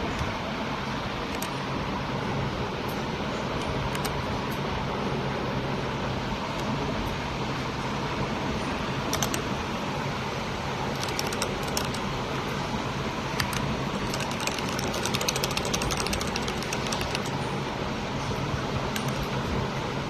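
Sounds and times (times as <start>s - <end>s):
background hum: 7.5s - 20.0s
mechanical keyboard typing: 9.1s - 9.5s, 10.9s - 12.1s, 13.3s - 17.4s, 18.9s - 19.3s.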